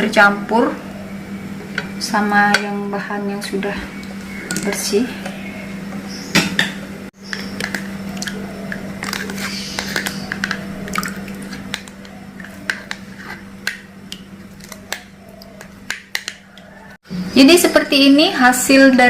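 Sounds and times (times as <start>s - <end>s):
steady low hum: 0.0s - 19.0s
utensils tapping and clinking: 6.4s - 16.7s.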